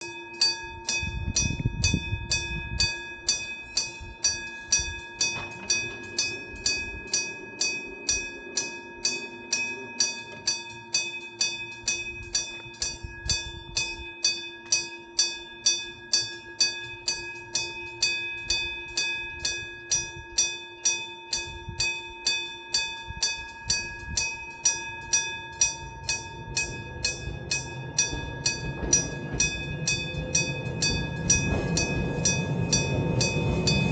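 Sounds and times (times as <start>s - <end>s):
railway crossing bell ringing: 0.0s - 33.9s
low rumble: 25.7s - 33.9s.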